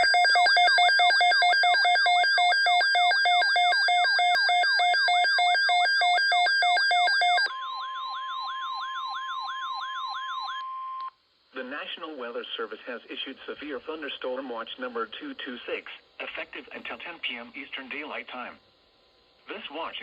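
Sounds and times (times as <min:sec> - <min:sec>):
electronic alarm falling sweeps: 0:00.0 - 0:11.0.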